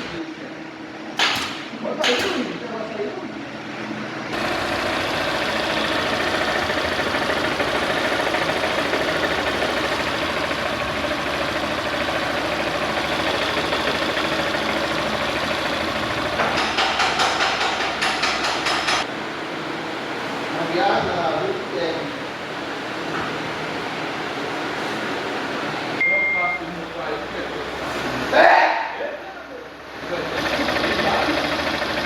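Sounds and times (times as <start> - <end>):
loud rhythmic clatter: 4.3 - 19.1
motorcycle engine idling: 4.3 - 19.1, 30.2 - 32.0.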